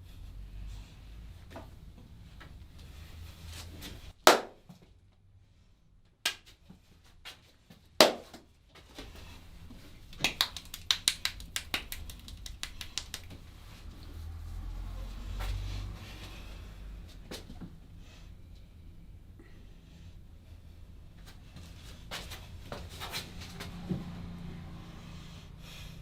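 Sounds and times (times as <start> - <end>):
loud joint snaps: 10.2 - 13.4.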